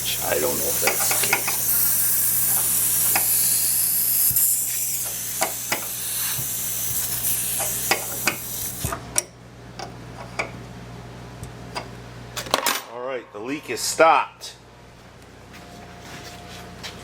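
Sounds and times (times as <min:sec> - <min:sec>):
compressed air hissing: 0:00.0 - 0:08.9
wrench clicking on metal: 0:00.8 - 0:03.5, 0:04.1 - 0:06.0, 0:07.0 - 0:08.8.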